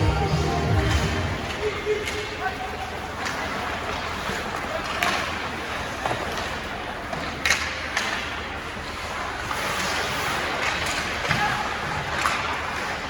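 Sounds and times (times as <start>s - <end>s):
arena noise: 0.0s - 13.0s
skates rushing on ice: 0.9s - 13.0s
hockey sticks and puck knocking: 4.9s - 11.5s.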